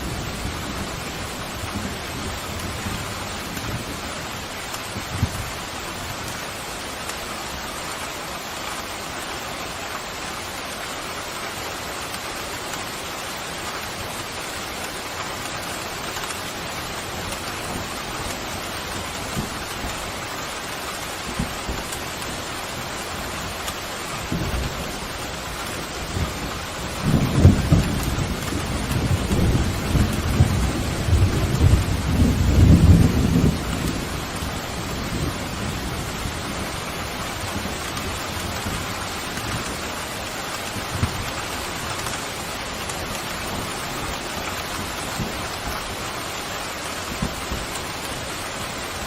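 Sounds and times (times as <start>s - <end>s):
steady rain pouring: 0.0s - 49.0s
low rolling thunder: 26.0s - 39.9s.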